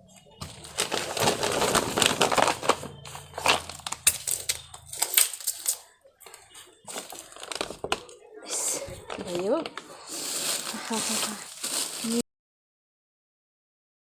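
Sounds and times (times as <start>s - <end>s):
potting soil crunching: 9.3s - 12.2s.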